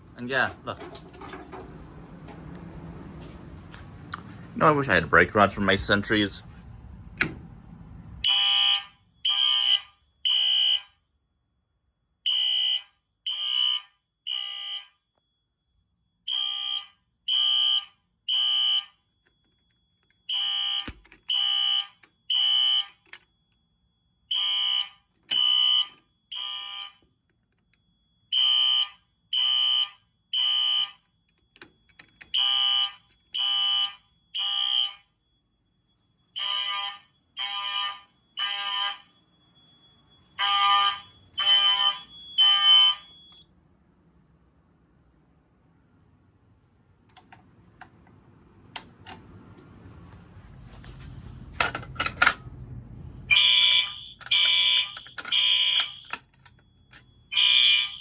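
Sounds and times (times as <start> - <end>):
fire alarm horn blasts: 8.2 - 11.1, 12.2 - 43.4, 52.9 - 58.0
faint steady high tone: 39.1 - 43.5.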